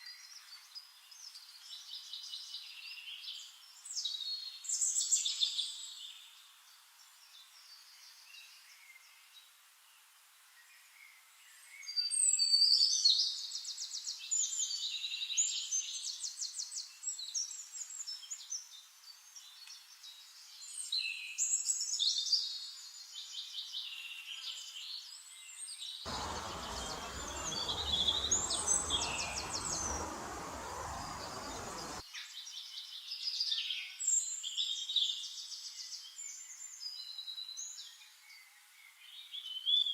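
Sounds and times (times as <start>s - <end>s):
rushing noise: 26.1s - 32.0s
songbirds chirping and trilling: 26.1s - 32.0s.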